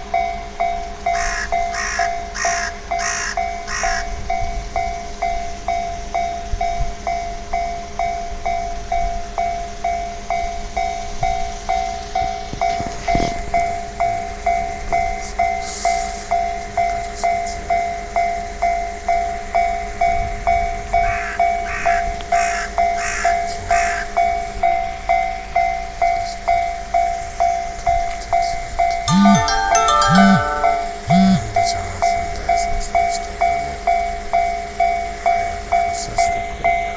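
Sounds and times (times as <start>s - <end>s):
level-crossing warning bell: 0.0s - 36.9s
phone notification chime: 29.1s - 31.5s
phone vibration buzzing: 31.1s - 31.5s.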